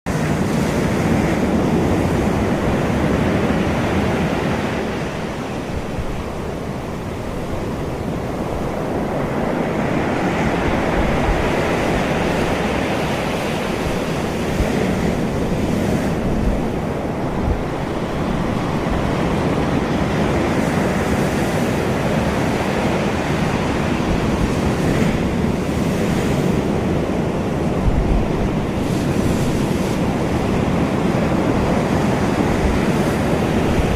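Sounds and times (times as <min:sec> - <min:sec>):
heavy ocean surf breaking: 0:00.1 - 0:33.9
wind hitting microphone: 0:00.1 - 0:33.9.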